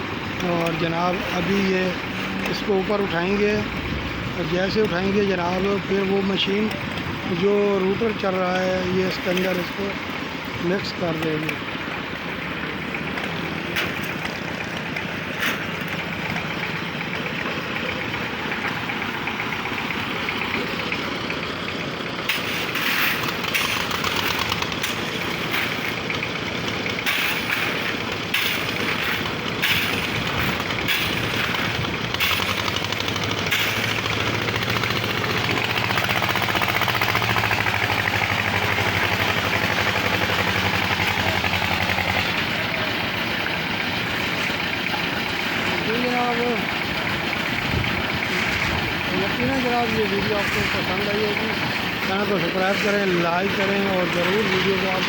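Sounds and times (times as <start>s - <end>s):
concrete mixer running: 0.0s - 55.0s
sharp clattering knocks: 12.9s - 55.0s.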